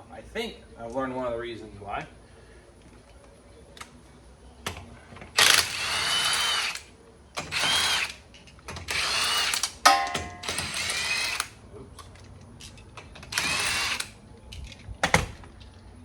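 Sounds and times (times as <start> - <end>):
cordless drill whirring: 5.4 - 6.8, 7.4 - 8.2, 8.8 - 9.7, 10.4 - 11.5, 13.2 - 14.1.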